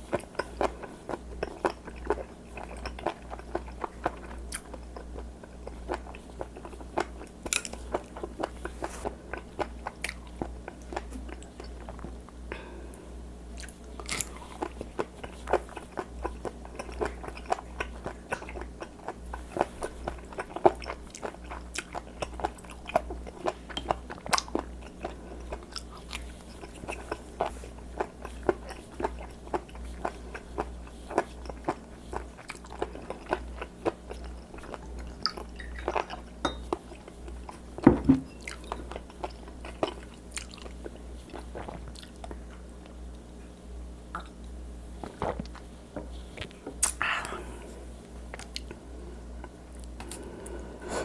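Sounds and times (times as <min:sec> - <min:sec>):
wet chewing and crunching: 0:00.0 - 0:12.4, 0:13.5 - 0:43.0
dull thump: 0:37.8 - 0:38.3.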